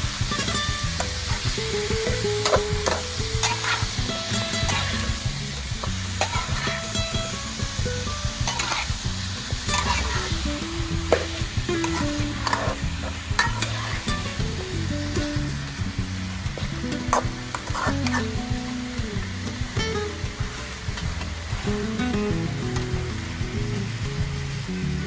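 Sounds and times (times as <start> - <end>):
food sizzling in a pan: 0.0 - 25.0
utensil scraping a pan: 0.3 - 7.3, 8.4 - 14.5, 16.5 - 18.5, 20.2 - 21.9.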